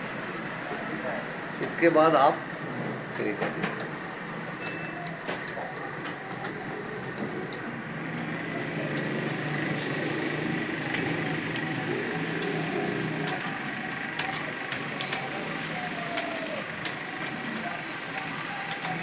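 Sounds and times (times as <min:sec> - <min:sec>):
keyboard keys clicking: 0:14.2 - 0:19.0.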